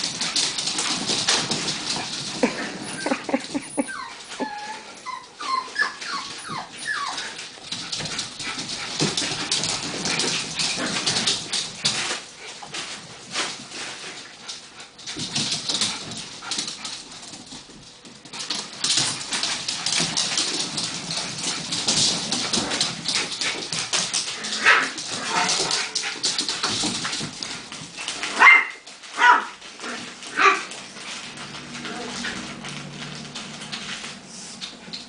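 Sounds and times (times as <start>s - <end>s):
puppies yipping and whimpering: 2.7s - 7.6s.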